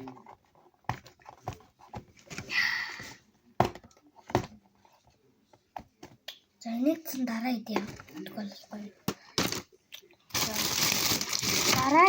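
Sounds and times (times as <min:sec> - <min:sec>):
package rustle: 0:10.3 - 0:12.0.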